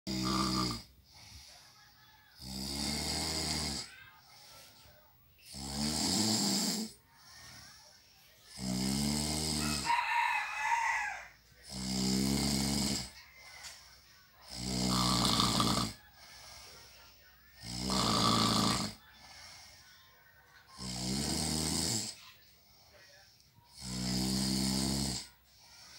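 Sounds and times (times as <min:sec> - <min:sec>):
person snoring: 0:00.1 - 0:00.9, 0:02.4 - 0:03.9, 0:05.4 - 0:07.0, 0:08.5 - 0:10.1, 0:10.8 - 0:13.2, 0:14.4 - 0:16.1, 0:17.6 - 0:19.0, 0:20.8 - 0:22.2, 0:23.7 - 0:25.9.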